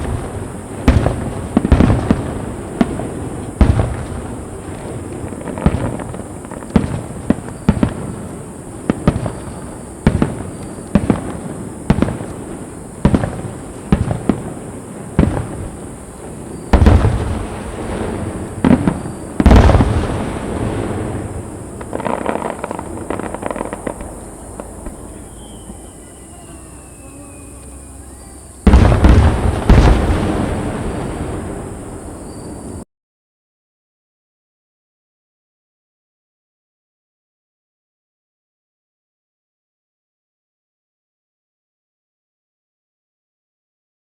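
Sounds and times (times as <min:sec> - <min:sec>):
fireworks booming: 0:00.0 - 0:32.8
small firework pops: 0:05.1 - 0:14.5, 0:18.6 - 0:20.2, 0:20.8 - 0:26.0.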